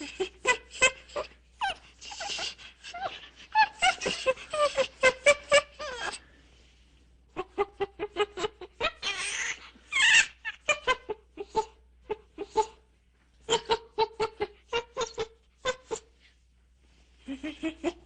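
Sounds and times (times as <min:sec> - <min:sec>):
monkey shrieking: 0:08.8 - 0:10.6.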